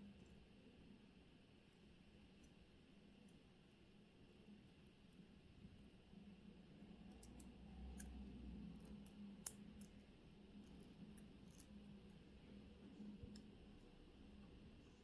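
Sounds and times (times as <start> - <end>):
small metal tools clicking: 7.0 - 8.2, 10.6 - 11.9.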